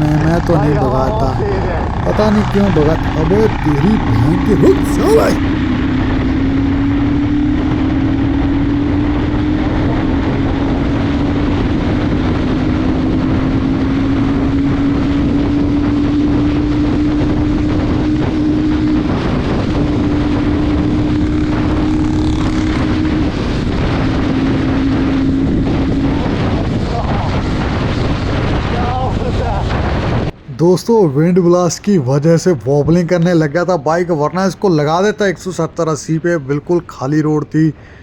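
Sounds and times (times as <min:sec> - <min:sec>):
wind buffeting on microphone: 0:23.0 - 0:30.5.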